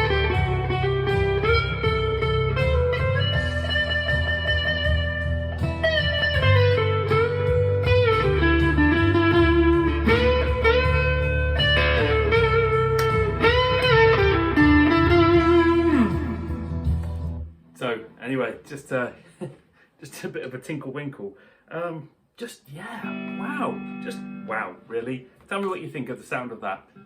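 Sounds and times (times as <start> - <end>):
overdriven electric guitar lead: 0.0 - 17.6, 23.0 - 25.1.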